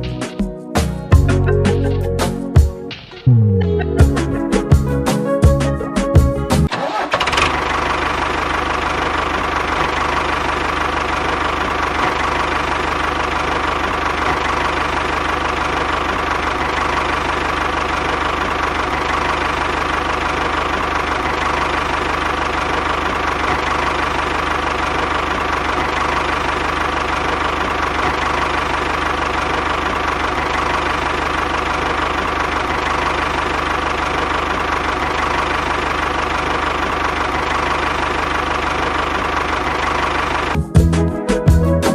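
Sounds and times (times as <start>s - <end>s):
tractor engine running: 0.0s - 41.9s.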